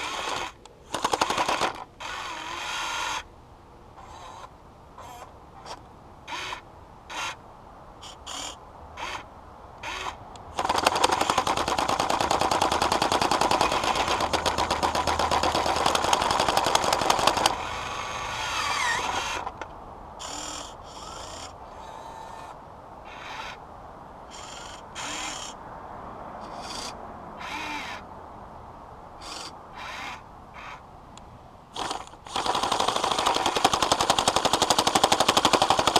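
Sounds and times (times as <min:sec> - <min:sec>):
toy jackhammer hammering ice: 0:00.0 - 0:02.6, 0:10.6 - 0:17.8, 0:31.8 - 0:35.9
small electric motors whirring: 0:00.0 - 0:03.2, 0:09.9 - 0:19.6, 0:20.2 - 0:22.5, 0:31.8 - 0:33.8.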